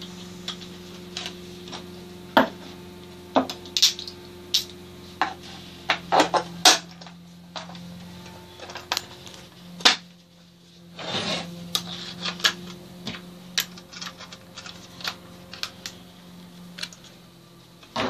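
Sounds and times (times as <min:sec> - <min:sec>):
steady low hum: 0:00.0 - 0:18.0
short rubbing scrape: 0:10.9 - 0:12.3.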